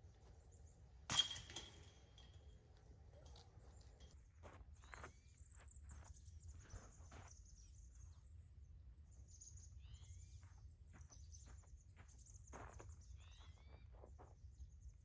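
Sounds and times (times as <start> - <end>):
bird chirping: 9.0 - 14.3.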